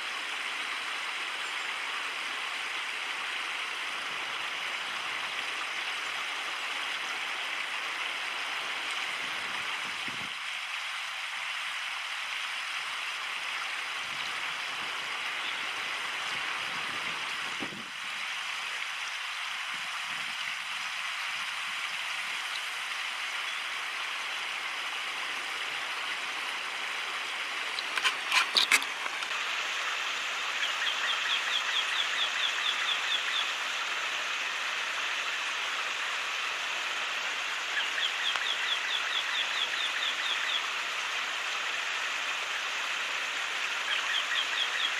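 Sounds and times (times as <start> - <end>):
stream flowing: 0.0 - 44.9
sharp clicks: 27.7 - 29.3.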